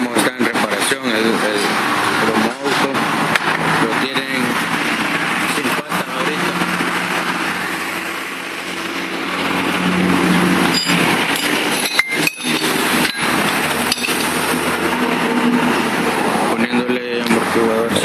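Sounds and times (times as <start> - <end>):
engine running steadily: 0.0 - 18.0
sharp clinks and knocks: 10.6 - 14.6.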